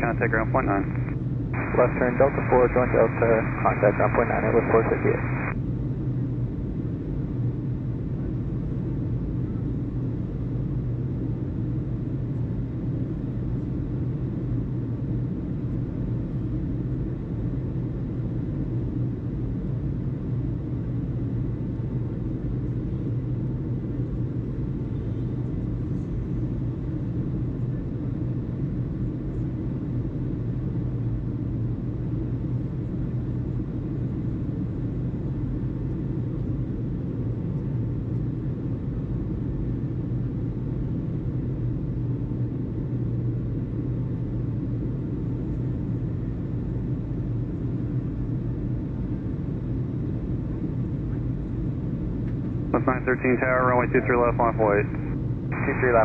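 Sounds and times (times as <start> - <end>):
low background rumble: 0.0 - 5.6, 52.7 - 56.0
constant low hum: 0.0 - 56.0.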